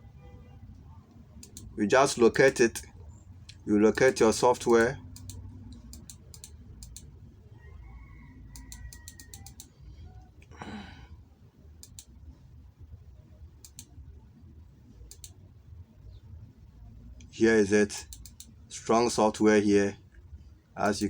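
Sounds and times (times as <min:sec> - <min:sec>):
low steady hum: 0:00.0 - 0:21.0
computer mouse clicking: 0:01.4 - 0:01.7, 0:03.5 - 0:07.1, 0:08.5 - 0:09.7, 0:11.8 - 0:12.2, 0:13.6 - 0:13.9, 0:15.1 - 0:15.4, 0:18.0 - 0:18.6
short breath: 0:10.5 - 0:11.2.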